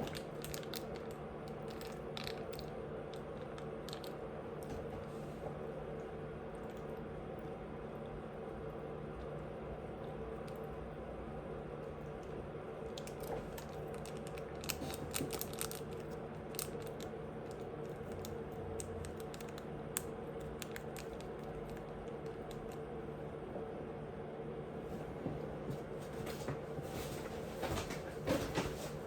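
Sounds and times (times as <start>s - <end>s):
chewing with crunches: 0.0s - 4.6s, 11.7s - 23.2s
steady low hum: 0.0s - 29.0s.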